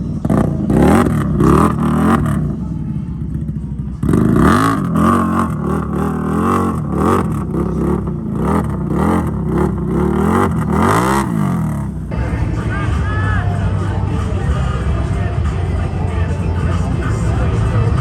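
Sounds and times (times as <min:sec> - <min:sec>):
atv engine revving: 0:00.0 - 0:18.0.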